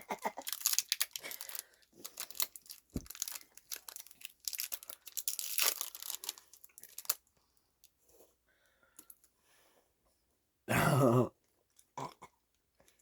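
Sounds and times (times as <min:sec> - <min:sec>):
plastic wrapper crinkling: 0:00.3 - 0:07.3.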